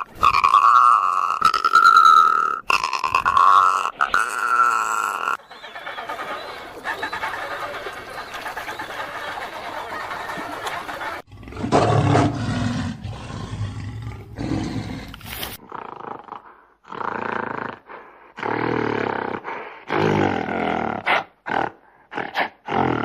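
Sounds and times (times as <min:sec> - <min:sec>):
large animal roaring: 0:11.3 - 0:15.2.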